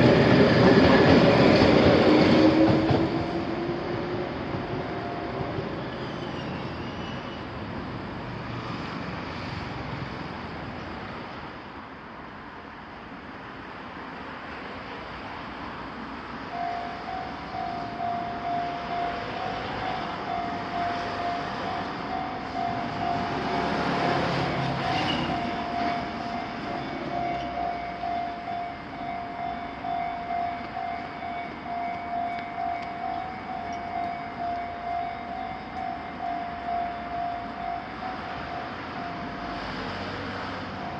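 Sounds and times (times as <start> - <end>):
street noise: 0.0 - 40.9
level-crossing bell dinging: 16.5 - 39.7
vehicle passing: 18.4 - 27.2.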